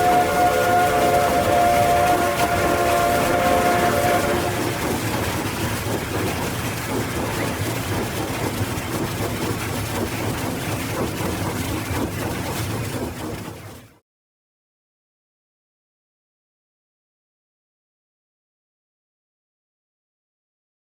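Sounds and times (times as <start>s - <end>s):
train whistle blast: 0.0s - 5.0s
locomotive rumbling on rails: 0.0s - 13.9s.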